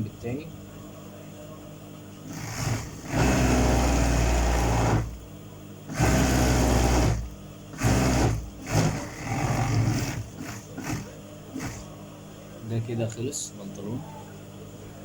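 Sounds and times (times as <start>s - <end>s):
sewing machine stitching: 2.3s - 5.2s, 5.9s - 11.9s.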